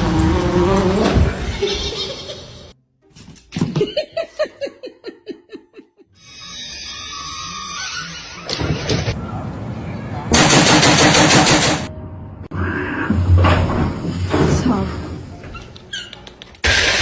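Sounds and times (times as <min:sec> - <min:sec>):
person laughing: 0:01.4 - 0:02.7, 0:03.6 - 0:06.2.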